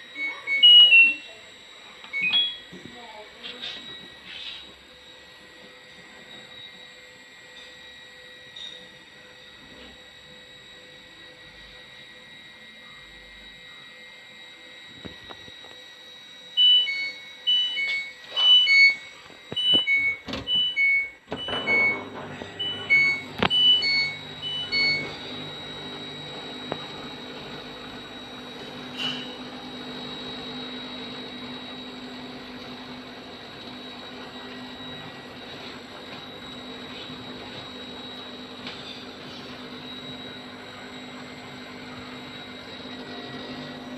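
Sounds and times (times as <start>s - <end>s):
washing machine motor hum: 0.0s - 43.9s
electronic beeps: 0.2s - 1.4s, 2.1s - 2.8s, 16.6s - 25.2s.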